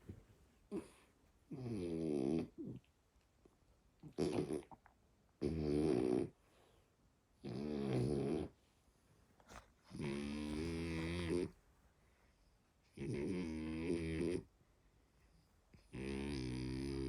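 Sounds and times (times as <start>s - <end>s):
puppy snoring: 0.7s - 2.9s, 4.0s - 4.8s, 5.4s - 6.4s, 7.4s - 8.6s, 9.5s - 11.6s, 12.9s - 14.5s, 15.8s - 17.0s.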